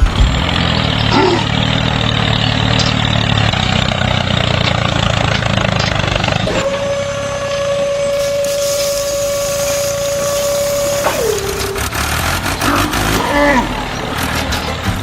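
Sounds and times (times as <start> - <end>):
small engine running: 0.0 - 15.0
high-pitched motor whine: 6.2 - 13.6.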